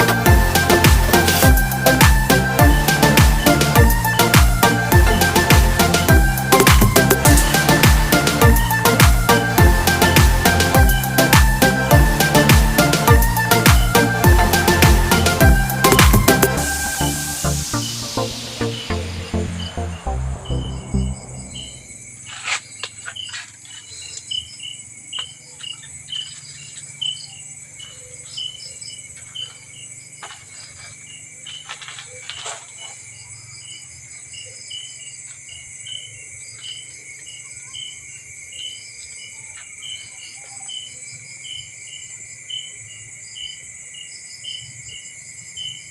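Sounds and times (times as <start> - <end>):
crickets chirping: 17.0 - 45.9.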